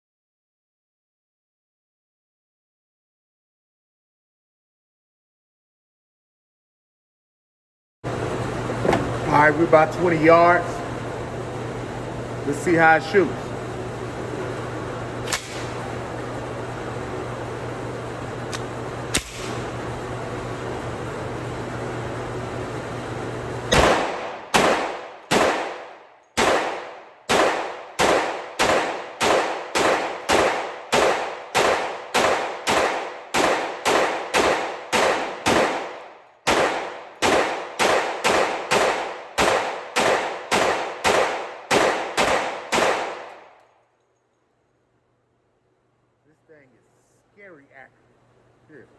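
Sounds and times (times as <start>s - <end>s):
ventilation hum: 8.0s - 43.8s, 44.5s - 48.9s
gunshots with echo: 15.2s - 15.9s, 19.1s - 19.7s, 23.7s - 43.5s.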